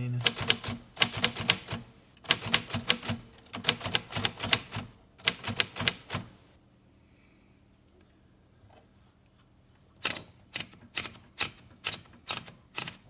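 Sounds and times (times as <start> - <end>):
manual typewriter key strikes: 0.2 - 6.3, 10.0 - 13.0.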